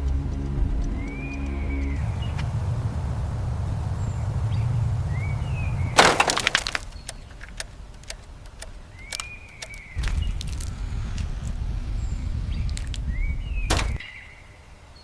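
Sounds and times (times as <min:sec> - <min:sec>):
steady low rumble: 0:00.0 - 0:14.8
glass shattering: 0:06.0 - 0:06.9.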